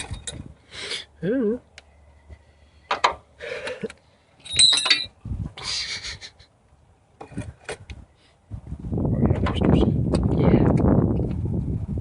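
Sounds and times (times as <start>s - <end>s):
metal hand tools clinking: 4.4s - 5.1s.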